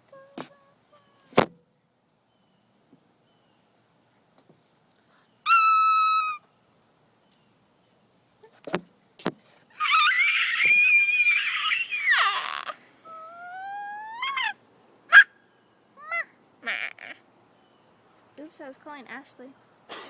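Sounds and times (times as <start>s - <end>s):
girls squealing and shrieking: 5.5s - 6.4s, 9.7s - 15.3s, 16.0s - 17.2s.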